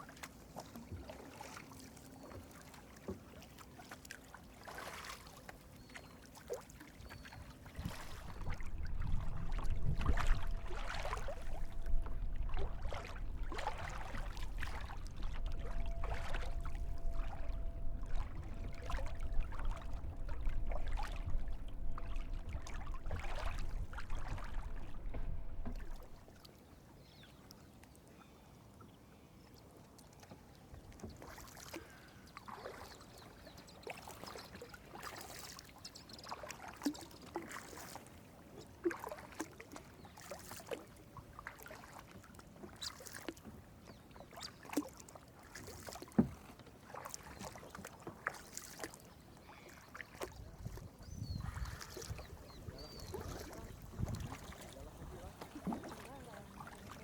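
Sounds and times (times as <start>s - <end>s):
paddle splashing in water: 0.0s - 26.5s, 30.8s - 33.1s, 36.3s - 57.0s
low rumble: 7.8s - 26.2s.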